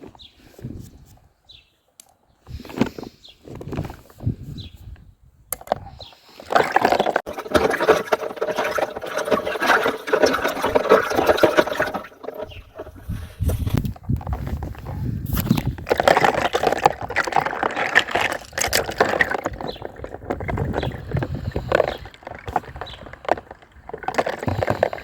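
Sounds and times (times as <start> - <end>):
water splashing: 6.5 - 13.7
water pouring: 6.5 - 13.9, 15.9 - 23.3.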